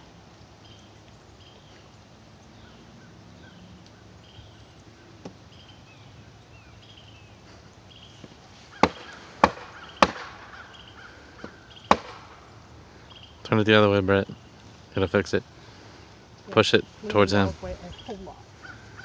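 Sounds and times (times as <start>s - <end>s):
sharp blows on wood: 8.8s - 10.6s, 11.4s - 12.4s.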